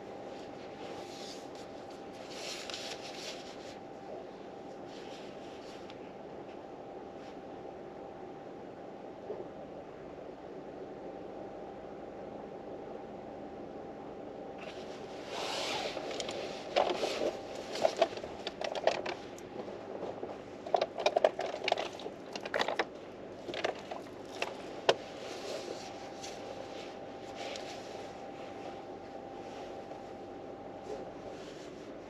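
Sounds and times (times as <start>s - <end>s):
faint hum: 0.0s - 32.0s
rustling and crinkling: 0.2s - 7.4s, 14.6s - 32.0s.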